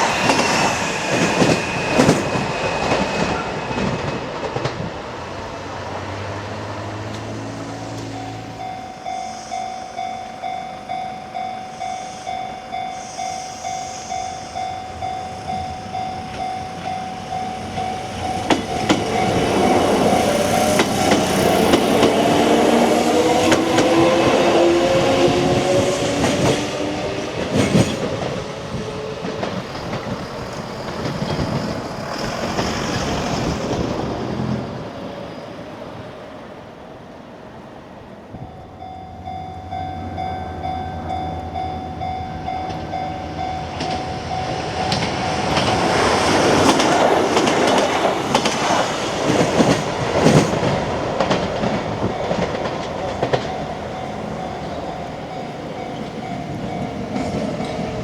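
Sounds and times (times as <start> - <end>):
train wheels clattering: 0.0 - 8.2, 13.6 - 34.6, 41.2 - 58.0
electric train passing: 0.0 - 58.0
level crossing warning bell ringing: 7.6 - 29.5, 38.2 - 58.0.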